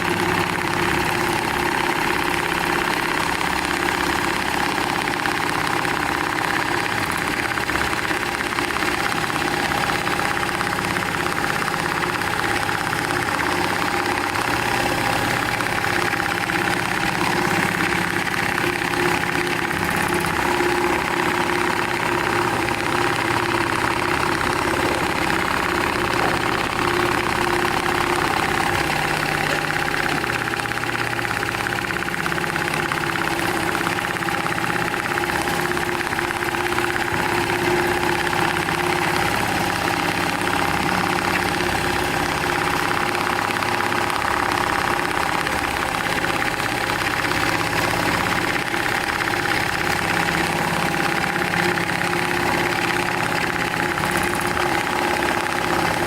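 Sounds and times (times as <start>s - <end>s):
sewing machine running: 0.0s - 56.0s.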